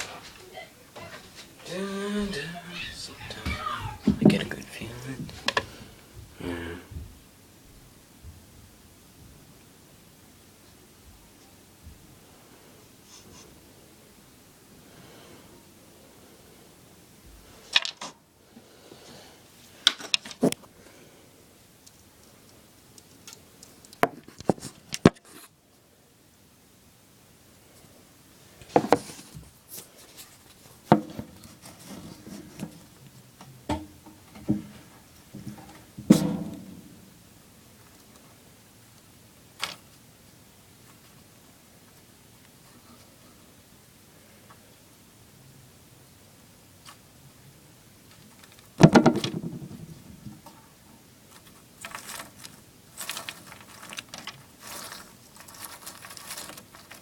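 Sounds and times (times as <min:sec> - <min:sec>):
rustling and clattering: 0:19.6 - 0:20.7, 0:28.6 - 0:38.4, 0:48.0 - 0:57.0.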